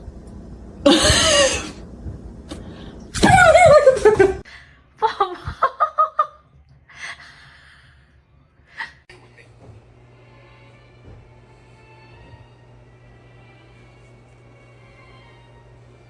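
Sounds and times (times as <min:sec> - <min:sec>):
person laughing: 0:00.9 - 0:01.8, 0:03.2 - 0:04.4, 0:05.0 - 0:06.4.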